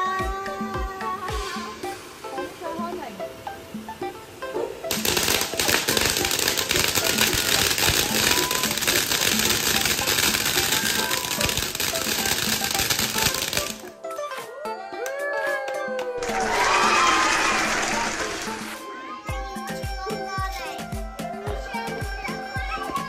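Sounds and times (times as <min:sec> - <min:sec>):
background music: 0:00.0 - 0:23.0
fireworks crackling: 0:04.9 - 0:14.0, 0:16.2 - 0:19.0.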